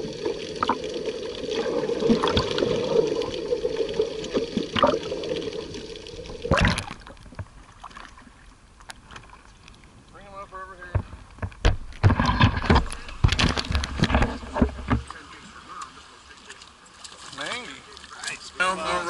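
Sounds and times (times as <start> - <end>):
water trickling and splashing: 0.0 - 10.3, 11.0 - 19.0.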